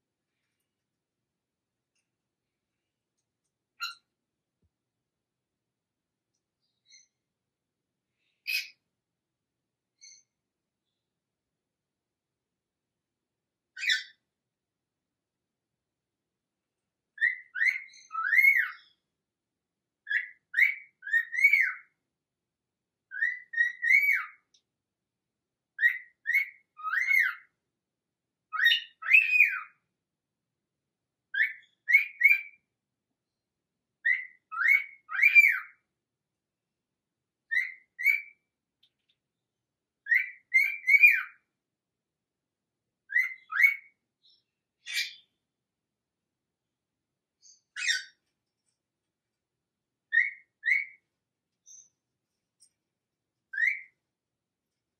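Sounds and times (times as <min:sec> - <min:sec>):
bird whistled call: 0:40.1 - 0:41.4, 0:43.1 - 0:43.9.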